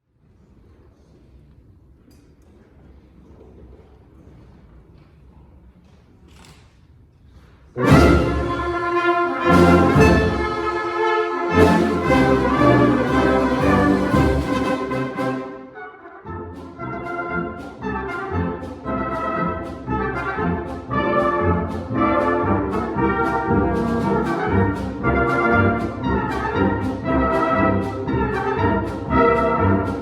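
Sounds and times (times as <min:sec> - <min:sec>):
brass orchestral music: 0:07.8 - 0:30.0.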